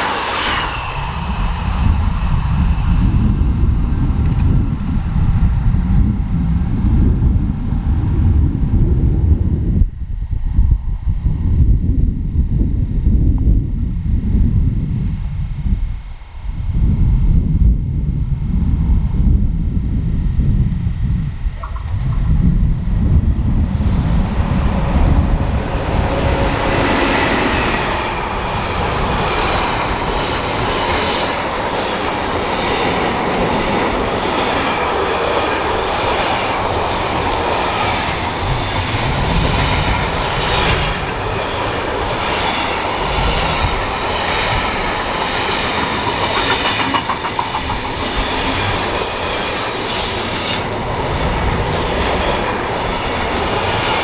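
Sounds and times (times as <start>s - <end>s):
train wheels rolling on rail: 0.0s - 10.1s, 20.0s - 54.0s
train clatter: 23.3s - 54.0s.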